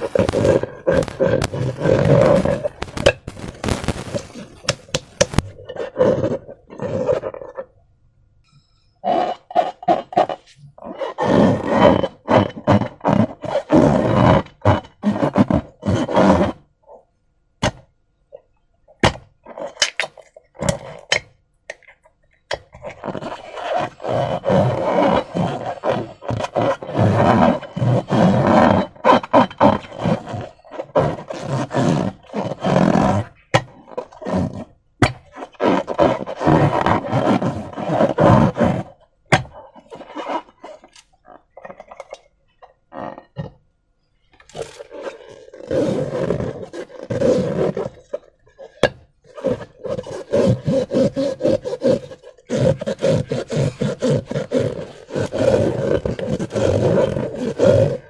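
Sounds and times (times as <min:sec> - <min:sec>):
slime squelching and crackling: 0:00.0 - 0:07.6.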